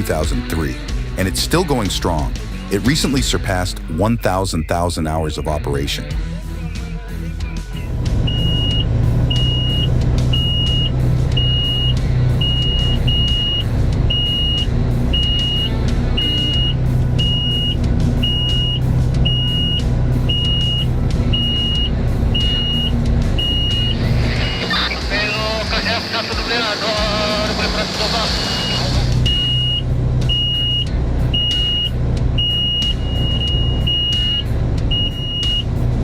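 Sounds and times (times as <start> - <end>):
diesel engine running: 0.0 - 36.0
back-up alarm beeping: 8.2 - 26.3, 28.4 - 35.7.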